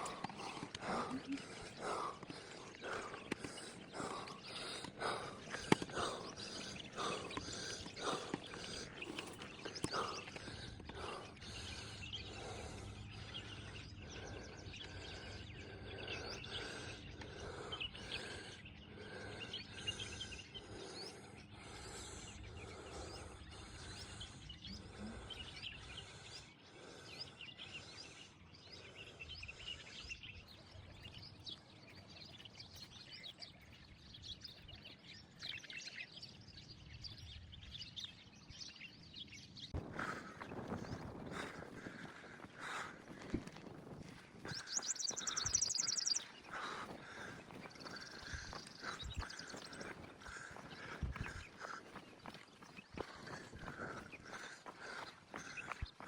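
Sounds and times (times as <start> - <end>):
crunching on stony ground: 0.0 - 11.7, 39.8 - 45.6
small birds chirping: 0.0 - 56.0.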